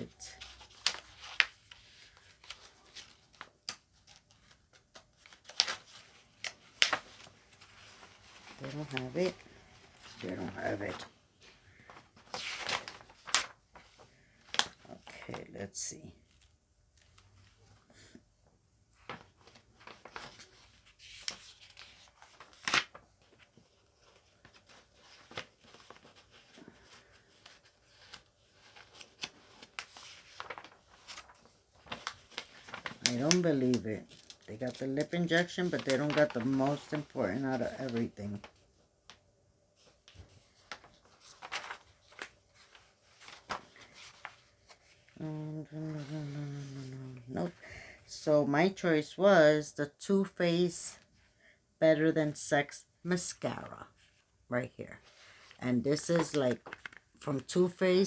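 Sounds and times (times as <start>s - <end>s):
paper and packaging rustling: 0.0s - 15.6s, 19.0s - 47.6s, 53.1s - 58.0s
clicks and rustles of handling: 55.1s - 57.3s.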